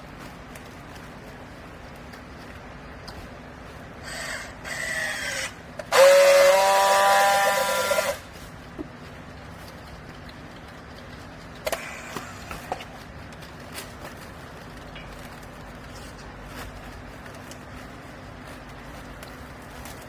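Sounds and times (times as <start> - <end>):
scattered clicks: 9.3 - 16.0.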